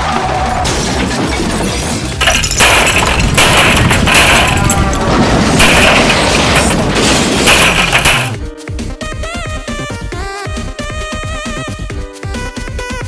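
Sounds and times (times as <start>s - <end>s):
crashing and booming noise: 0.0s - 8.4s
loud music: 0.0s - 13.0s.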